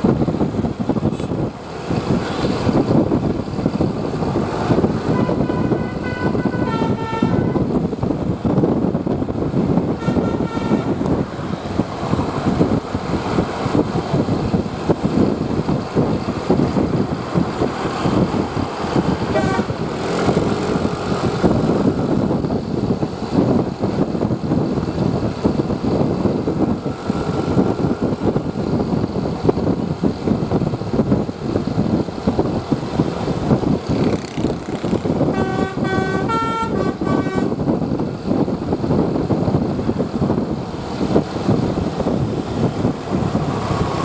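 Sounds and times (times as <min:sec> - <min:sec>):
road traffic noise: 0:00.0 - 0:44.0
wind buffeting microphone: 0:00.0 - 0:44.0
multi-tone bus horn melody: 0:05.0 - 0:07.8, 0:09.9 - 0:11.2, 0:19.2 - 0:19.9, 0:34.6 - 0:37.8.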